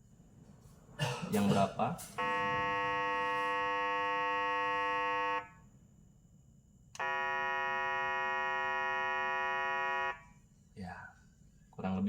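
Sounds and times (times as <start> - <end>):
steady electronic buzz: 2.2 - 5.5, 7.0 - 10.2.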